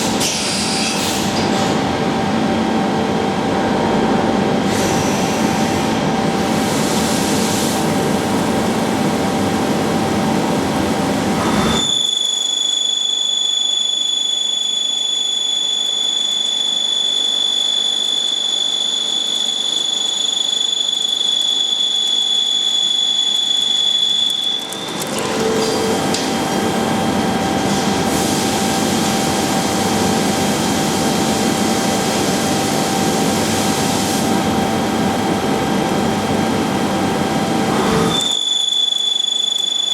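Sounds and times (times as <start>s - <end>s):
high-pitched machine whine: 10.1s - 33.5s, 34.2s - 39.9s
machining centre mechanical din: 24.4s - 27.5s.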